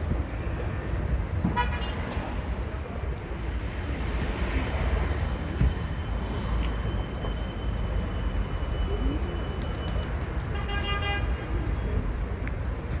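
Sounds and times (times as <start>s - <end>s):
street traffic rumble: 0.0s - 13.0s
car horn: 10.5s - 11.4s.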